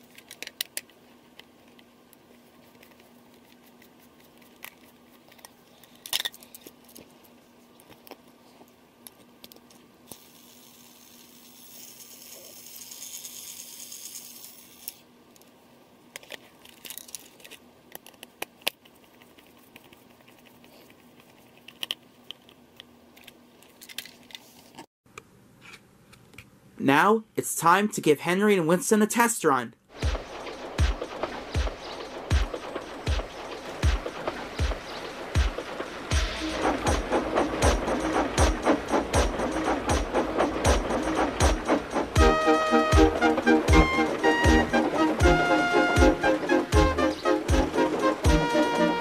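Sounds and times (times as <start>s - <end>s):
plastic toy clicks and rattles: 0.0s - 1.9s, 9.1s - 15.5s, 16.1s - 20.0s, 21.2s - 22.6s, 23.2s - 24.5s
hissing noise: 29.9s - 49.0s.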